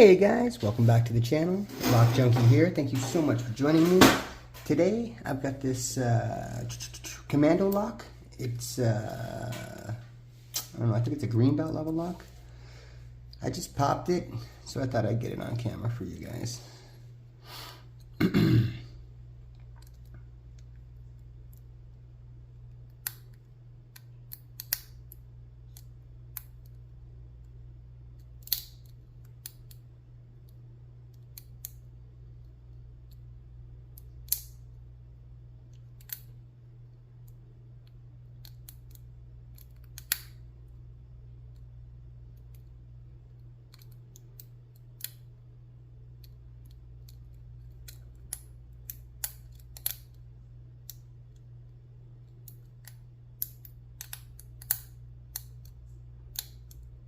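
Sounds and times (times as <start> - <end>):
steady low hum: 0.0 - 57.0
lock pick metallic clicks: 28.2 - 29.8, 33.9 - 34.6, 37.2 - 40.4, 46.2 - 50.2, 52.3 - 56.9.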